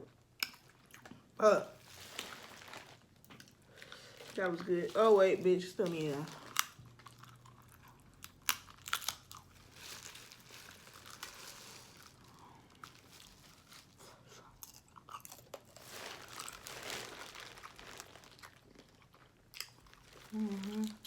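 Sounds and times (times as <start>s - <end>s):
person chewing: 0.3s - 2.6s, 6.3s - 9.8s, 11.1s - 21.0s.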